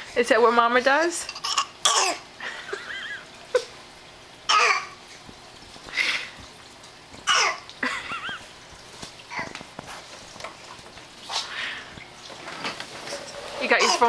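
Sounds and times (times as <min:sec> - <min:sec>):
toddler fake coughing: 0:01.3 - 0:02.3, 0:04.5 - 0:05.0, 0:07.2 - 0:07.7, 0:13.8 - 0:14.0.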